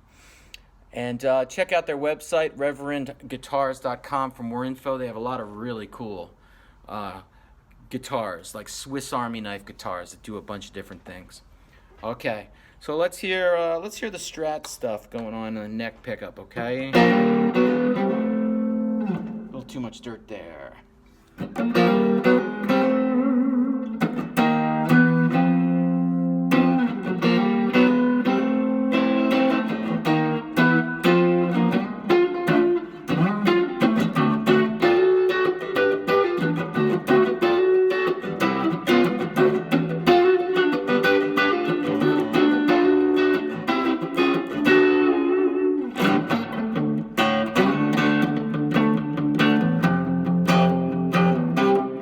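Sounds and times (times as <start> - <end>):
electric guitar through amplifier: 16.9 - 19.6, 21.3 - 52.0.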